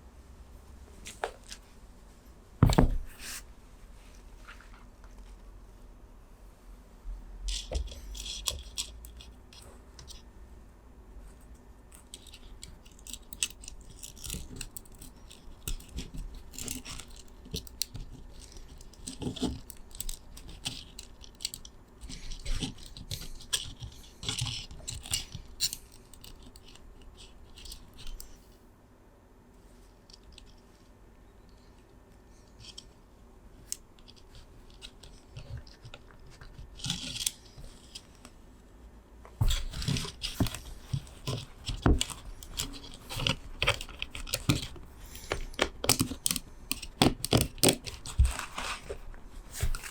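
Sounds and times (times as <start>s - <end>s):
small plastic and metal parts clicking: 7.5s - 10.2s, 11.9s - 28.4s, 33.6s - 38.4s, 39.5s - 49.0s.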